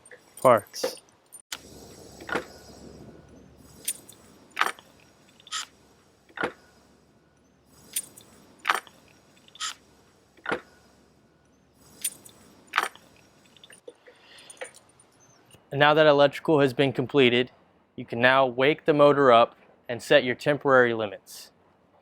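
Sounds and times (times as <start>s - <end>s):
metal tools clicking and clinking: 0.0s - 1.6s, 3.6s - 5.8s, 7.7s - 9.8s, 11.8s - 15.4s.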